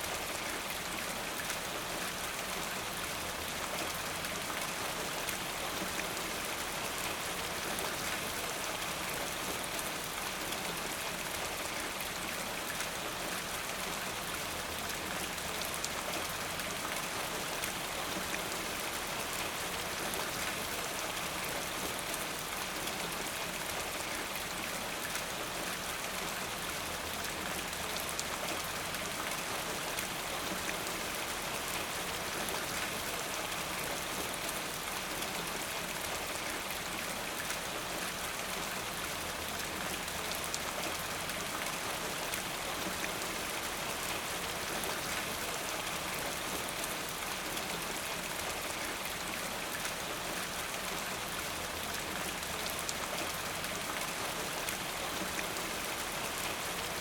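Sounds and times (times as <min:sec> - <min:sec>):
rain drops pattering: 0:00.0 - 0:57.0.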